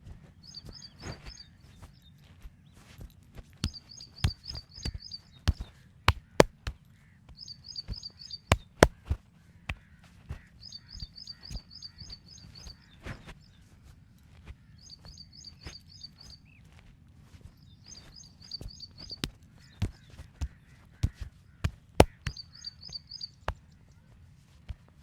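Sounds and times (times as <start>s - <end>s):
small bird chirping: 0.3s - 2.2s, 3.6s - 6.7s, 7.4s - 9.1s, 10.6s - 13.0s, 14.8s - 16.6s, 17.6s - 24.0s.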